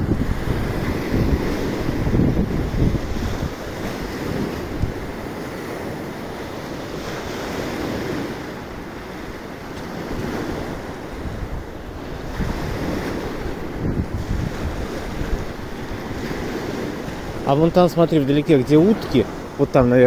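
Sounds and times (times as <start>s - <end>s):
sea surf washing ashore: 0.0s - 20.0s
wind buffeting microphone: 0.0s - 20.0s.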